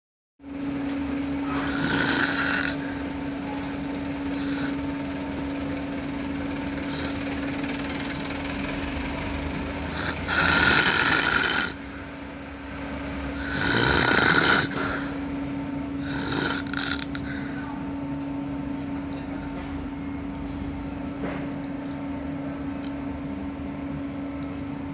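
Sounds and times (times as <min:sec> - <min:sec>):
steady low hum: 0:00.4 - 0:24.9
baby snoring: 0:01.4 - 0:03.1, 0:04.3 - 0:04.9, 0:06.9 - 0:07.2, 0:09.8 - 0:12.0, 0:13.3 - 0:15.2, 0:16.0 - 0:17.7.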